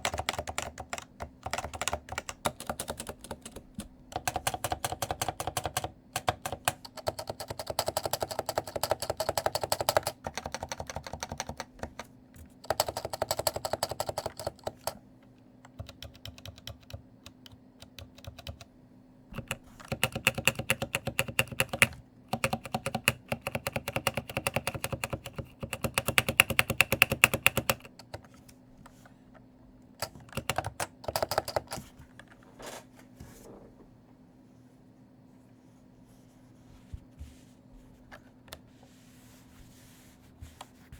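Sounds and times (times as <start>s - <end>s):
clattery keyboard typing: 0.0s - 15.0s, 15.7s - 18.7s, 19.3s - 28.3s, 30.0s - 31.9s.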